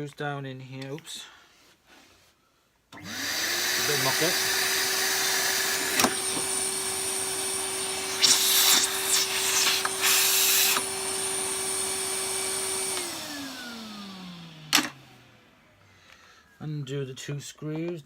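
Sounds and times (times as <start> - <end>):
small electric motor whining: 3.0 - 15.4.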